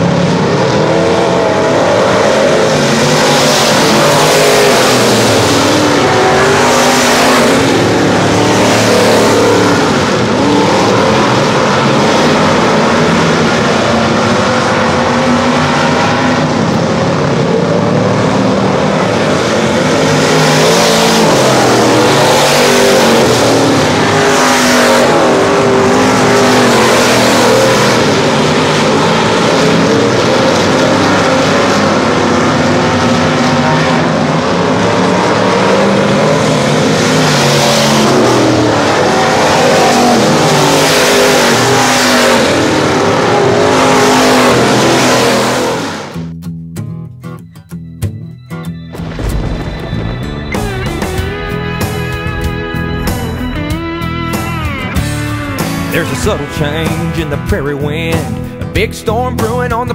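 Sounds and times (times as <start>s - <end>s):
race car engines revving: 0.0s - 46.4s, 48.8s - 59.9s.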